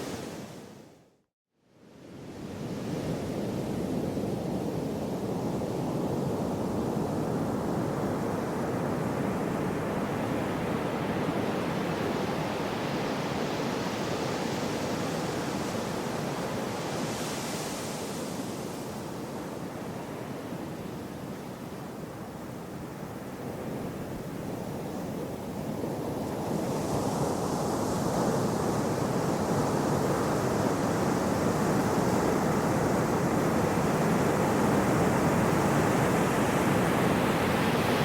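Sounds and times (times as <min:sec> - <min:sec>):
sea waves washing ashore: 0:22.5 - 0:38.0.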